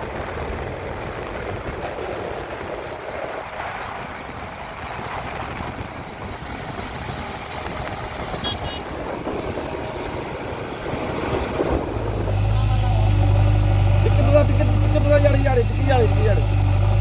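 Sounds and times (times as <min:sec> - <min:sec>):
heavy diesel machinery running: 0:04.8 - 0:17.0
high-pitched squeal: 0:08.4 - 0:17.0.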